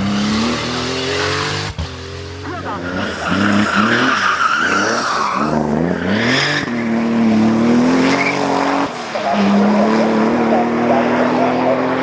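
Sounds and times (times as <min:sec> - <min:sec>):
race car engine revving: 0:00.0 - 0:12.0.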